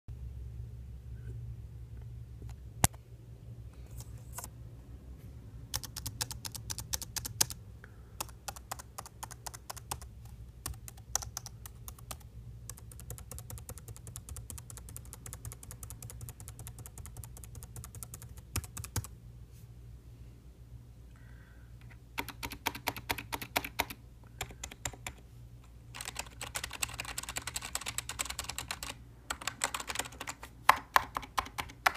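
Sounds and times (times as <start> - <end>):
steady low hum: 0.1 - 31.9
typing on computer keyboard: 5.7 - 7.6, 8.2 - 19.1, 22.2 - 25.2, 25.9 - 31.9.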